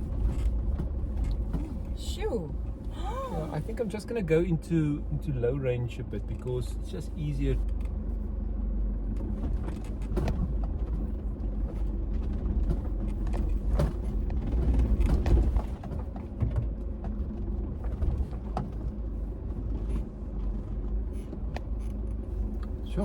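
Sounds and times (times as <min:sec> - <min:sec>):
vehicle body knocks and rattles: 0:00.0 - 0:02.8, 0:09.2 - 0:22.3
low rumble of engine and tyres: 0:00.0 - 0:23.0.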